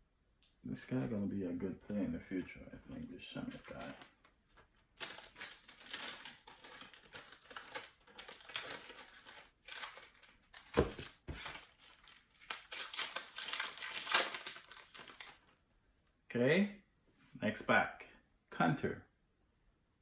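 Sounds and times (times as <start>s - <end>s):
wrapper crinkling: 3.2s - 15.6s.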